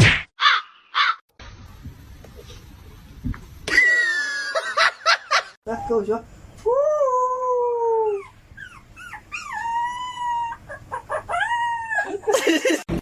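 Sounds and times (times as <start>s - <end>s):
dog howling and yelping: 7.0s - 12.3s.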